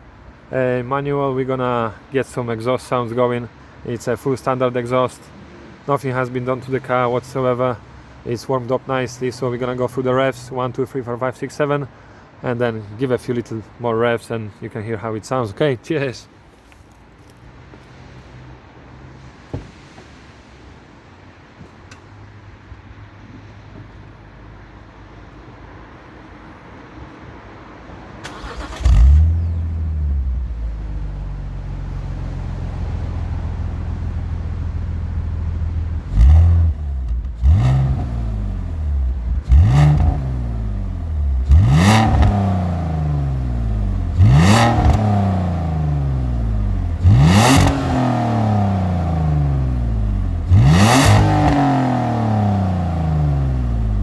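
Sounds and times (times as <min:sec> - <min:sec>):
car engine idling and revving: 0:28.2 - 0:54.0.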